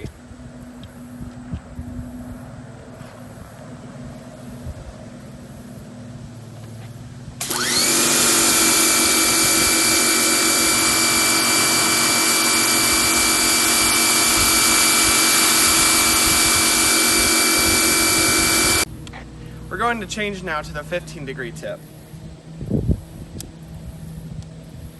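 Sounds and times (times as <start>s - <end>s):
pressure washer motor whine: 3.1s - 22.0s.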